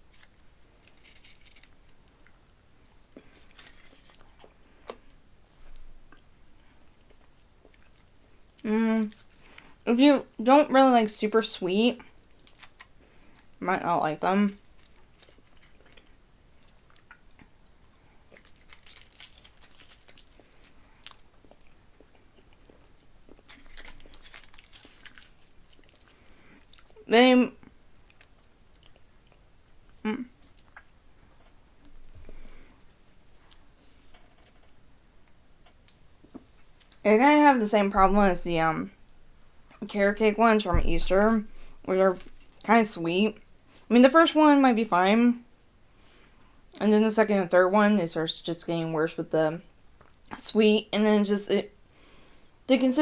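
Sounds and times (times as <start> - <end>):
chewing with mouth clicks: 14.7 - 27.0, 27.9 - 31.5.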